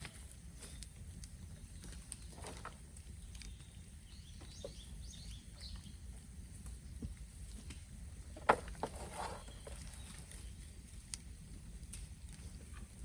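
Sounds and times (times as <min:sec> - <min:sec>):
bonfire flames rumbling: 0:00.0 - 0:13.0
fire crackling and popping: 0:00.0 - 0:13.0
small bird chirping: 0:03.2 - 0:06.0, 0:09.1 - 0:10.7.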